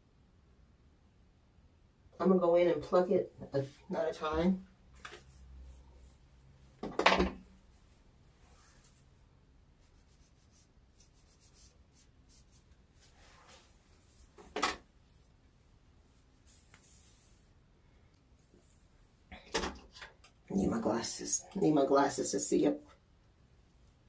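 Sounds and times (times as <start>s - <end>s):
faint rubbing and rustling: 3.5s - 6.8s, 7.4s - 20.3s.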